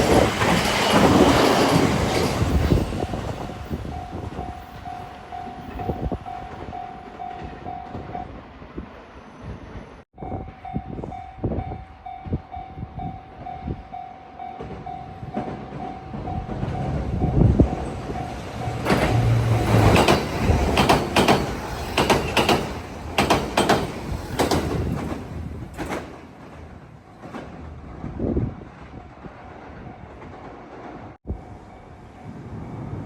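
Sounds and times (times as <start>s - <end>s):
level-crossing warning bell: 0.0s - 8.3s
train wheels clacking over rail joints: 17.7s - 27.8s.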